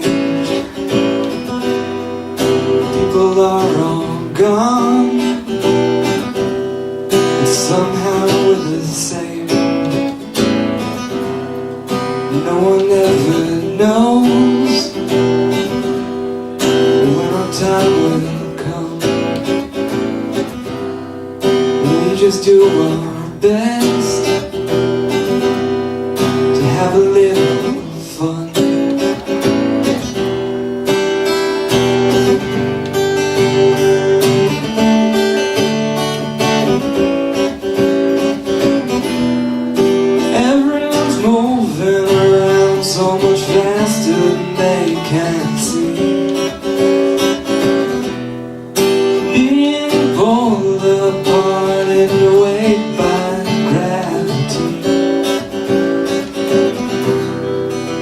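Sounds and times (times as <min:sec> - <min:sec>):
acoustic guitar strumming: 0:00.0 - 0:58.0.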